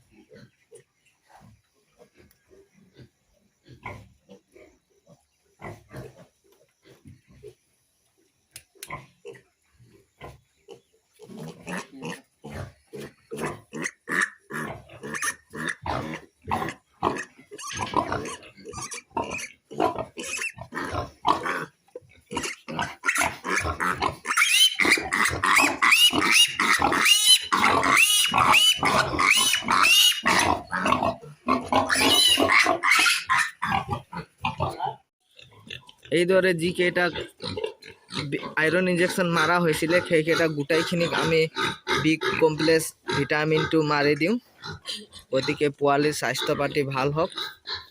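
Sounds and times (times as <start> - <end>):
piglets grunting: 10.2 - 47.9
piglet squealing loudly: 17.5 - 19.5, 20.2 - 20.6, 22.4 - 31.0, 31.8 - 34.0.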